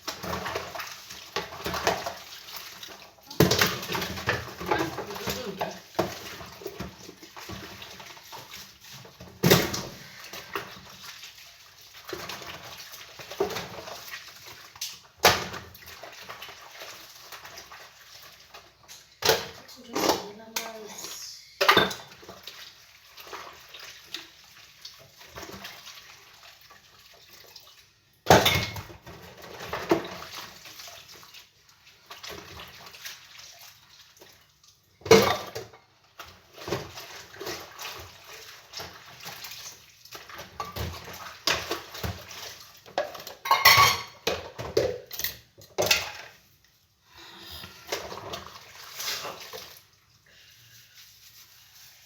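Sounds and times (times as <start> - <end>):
running water: 0.0 - 52.0
dishes clinking: 21.6 - 22.2, 43.0 - 46.3.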